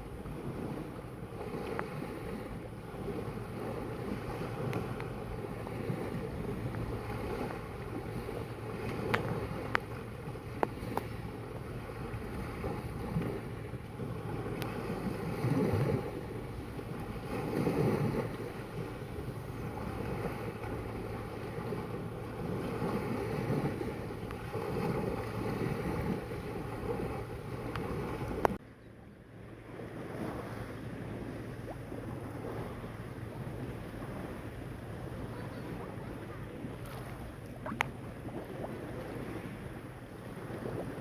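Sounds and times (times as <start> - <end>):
sea water washing: 0.0 - 28.6, 29.6 - 41.0
wind buffeting microphone: 0.0 - 28.6.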